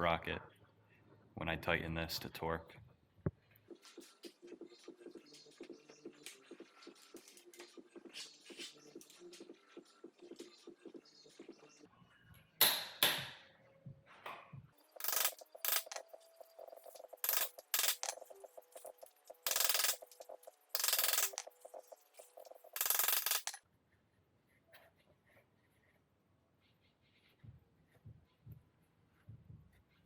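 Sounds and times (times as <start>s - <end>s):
sharp metal knock: 12.6s - 13.4s
ratchet wrench clicking: 15.0s - 16.1s, 16.8s - 23.6s.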